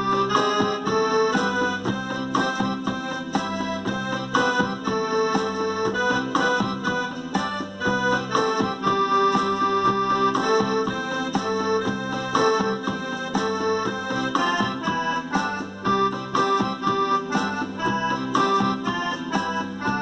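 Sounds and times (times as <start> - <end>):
accordion music: 0.0 - 20.0.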